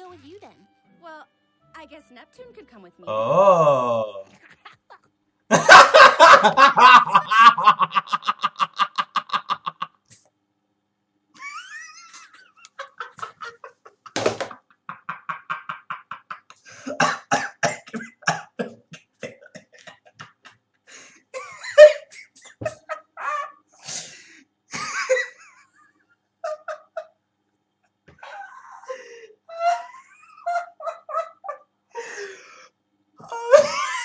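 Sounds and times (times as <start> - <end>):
person laughing hard: 5.5 - 10.0, 11.4 - 17.0, 18.0 - 23.7, 24.7 - 25.7, 26.4 - 27.1, 28.2 - 32.3, 33.3 - 34.0
person coughing: 16.8 - 20.0.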